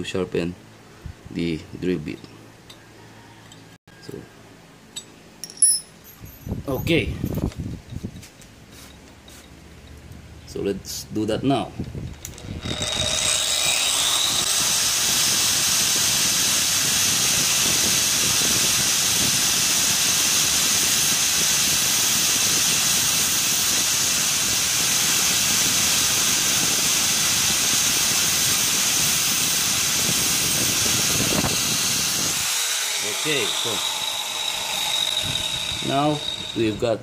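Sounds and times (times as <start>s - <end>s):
angle grinder grinding: 12.0s - 37.0s.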